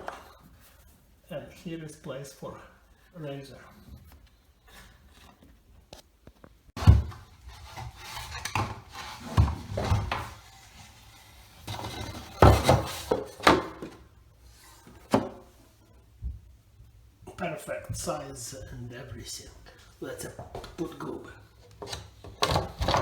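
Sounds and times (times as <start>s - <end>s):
board scraping and rubbing: 6.8s - 15.3s.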